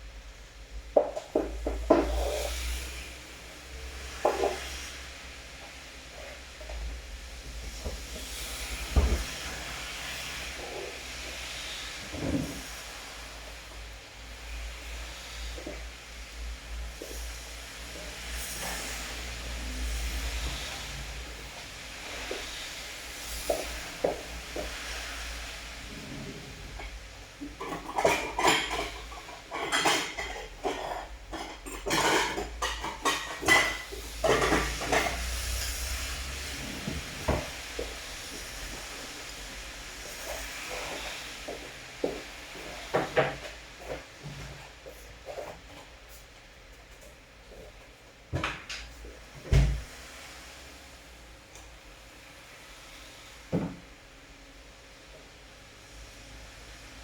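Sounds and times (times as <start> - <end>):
objects clattering and knocking: 0.9 - 3.0, 3.8 - 4.9, 6.2 - 11.4, 12.0 - 12.8, 25.8 - 37.9, 42.6 - 46.0
rain hissing: 2.0 - 29.1, 33.8 - 43.9, 49.8 - 53.5.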